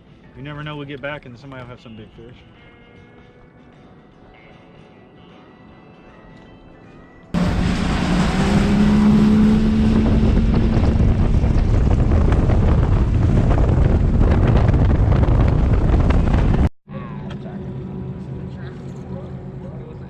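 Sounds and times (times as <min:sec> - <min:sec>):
outboard motor running: 0:07.4 - 0:16.6
water rushing past hull: 0:07.4 - 0:16.7
wind buffeting microphone: 0:07.4 - 0:16.7.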